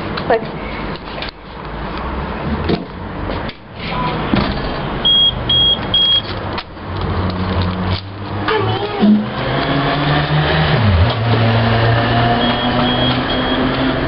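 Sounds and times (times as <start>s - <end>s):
vending machine beeping: 5.0s - 6.3s, 12.3s - 13.9s.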